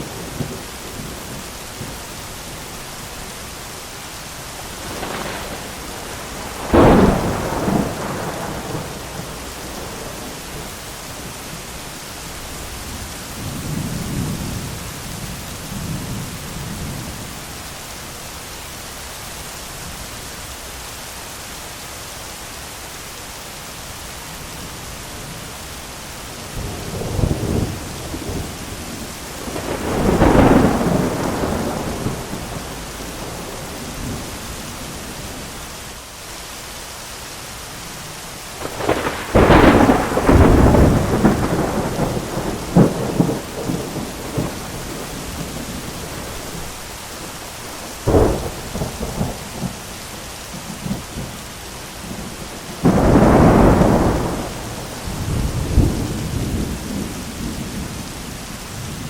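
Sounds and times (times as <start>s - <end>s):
heavy rain: 0.0s - 59.0s
thunder claps: 4.8s - 10.7s, 26.6s - 34.4s, 38.6s - 46.7s, 52.1s - 58.0s.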